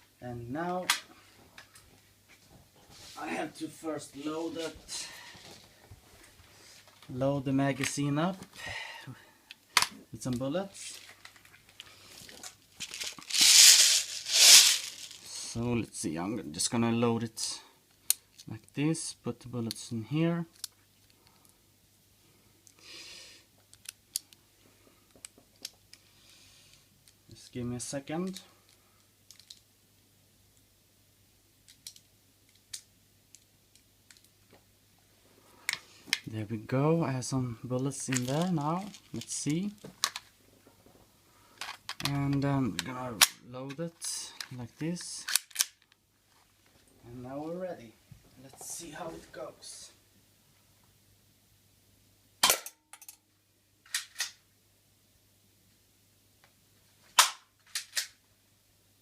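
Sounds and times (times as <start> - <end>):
plastic pellets clicking into magazine: 12.8 - 15.2.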